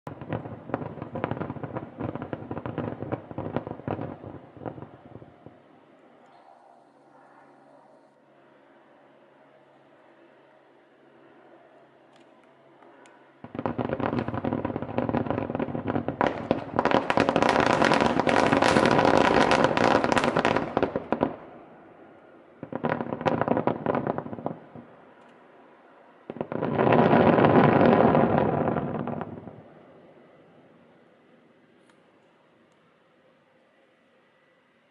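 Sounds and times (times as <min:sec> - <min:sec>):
fireworks bangs and crackles: 0:00.1 - 0:05.7, 0:13.4 - 0:21.9, 0:22.6 - 0:25.0, 0:26.2 - 0:29.9.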